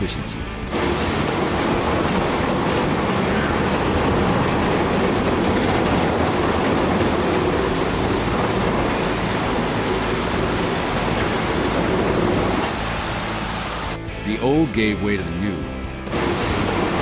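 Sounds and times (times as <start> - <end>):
dense rumbling noise: 0.7 - 14.0, 16.1 - 17.0.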